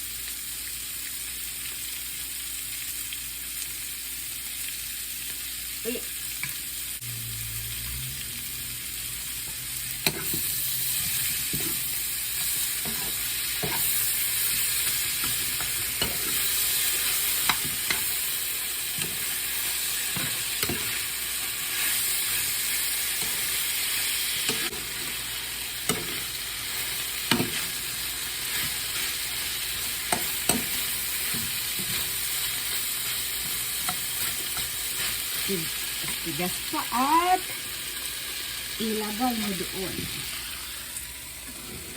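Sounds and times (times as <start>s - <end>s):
food sizzling in a pan: 0.0s - 41.9s
utensil scraping a pan: 9.5s - 18.2s.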